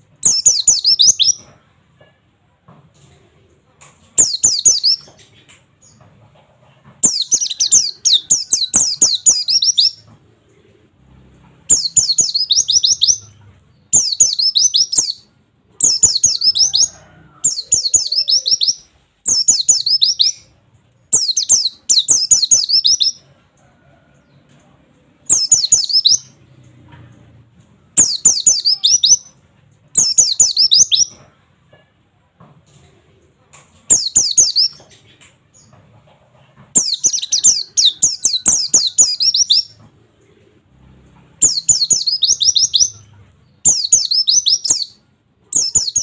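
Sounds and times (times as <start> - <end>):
bird chirping rapidly: 0.2 - 1.4, 4.2 - 5.1, 7.0 - 10.0, 11.7 - 20.5, 21.1 - 23.2, 25.3 - 26.4, 28.0 - 29.4, 30.0 - 31.2, 33.9 - 34.8, 36.8 - 39.8, 41.4 - 46.0.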